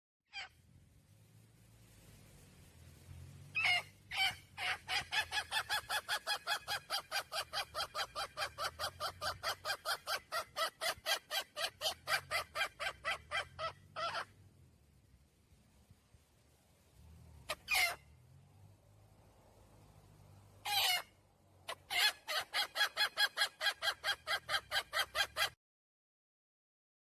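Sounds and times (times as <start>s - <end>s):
hen calling: 3.5s - 14.4s, 17.5s - 18.0s, 20.6s - 25.6s.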